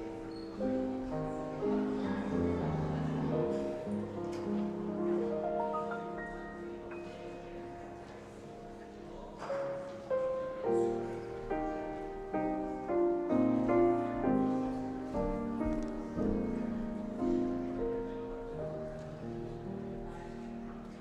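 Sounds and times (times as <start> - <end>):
piano playing slow chords: 0.0 - 21.0.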